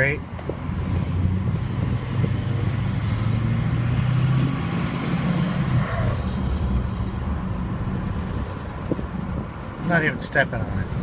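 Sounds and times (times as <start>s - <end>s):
diesel engine low rumble: 0.0s - 11.0s.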